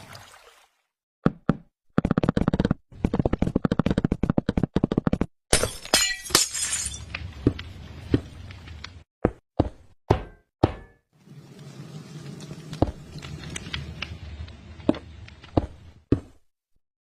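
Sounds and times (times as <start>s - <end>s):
crash with glass-like shatter: 5.5s - 7.1s.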